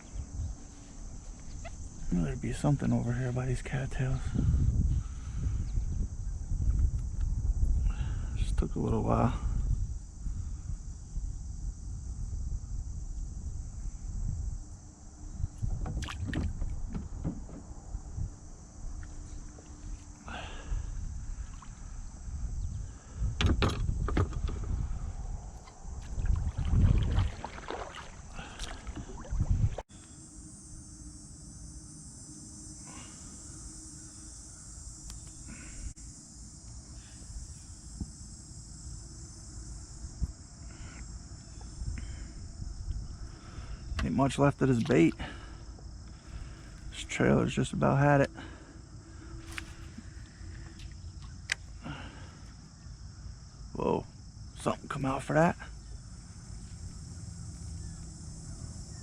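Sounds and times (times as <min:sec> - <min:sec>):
insects chirring: 0:00.0 - 0:59.0
kayak paddling knocks: 0:15.6 - 0:17.9, 0:23.4 - 0:24.8, 0:25.6 - 0:29.8.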